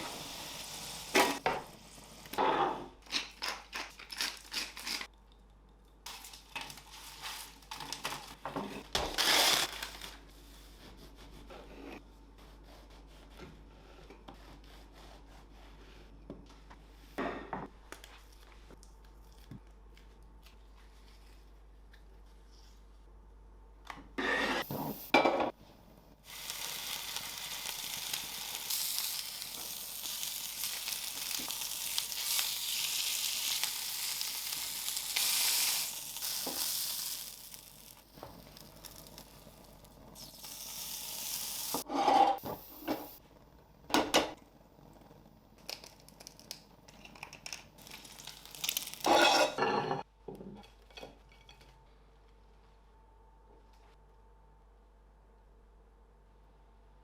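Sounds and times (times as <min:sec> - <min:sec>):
food sizzling in hot oil: 0:00.0 - 0:01.4, 0:26.2 - 0:43.2, 0:47.8 - 0:49.5.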